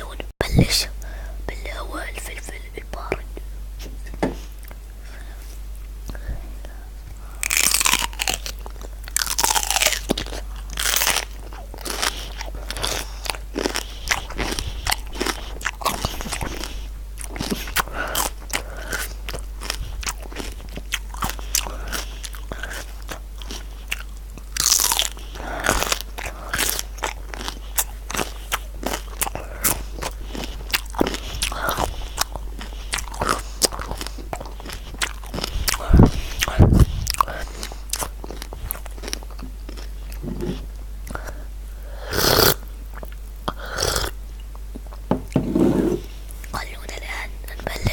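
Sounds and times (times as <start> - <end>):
person chewing crisp vegetables: 7.1 - 41.5, 42.1 - 45.1.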